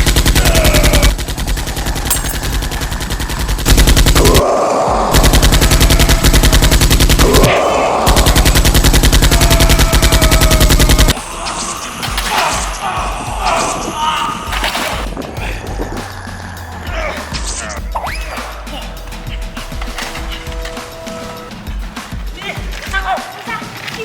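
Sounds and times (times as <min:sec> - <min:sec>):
machine-gun fire bursts: 0:03.7 - 0:04.5, 0:05.2 - 0:11.1.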